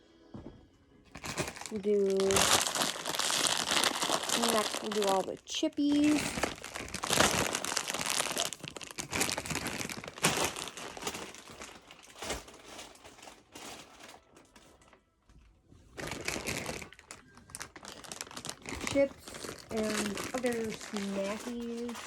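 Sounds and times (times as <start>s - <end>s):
snack packaging rustling: 1.1s - 15.1s, 15.9s - 22.0s.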